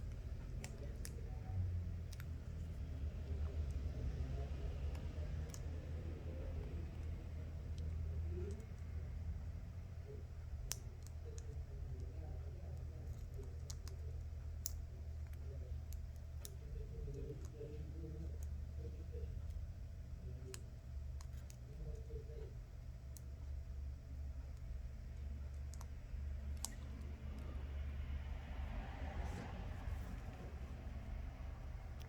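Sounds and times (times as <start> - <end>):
tweezers clicking and tapping: 0.0 - 9.5, 10.1 - 27.7
steady low hum: 0.0 - 32.0.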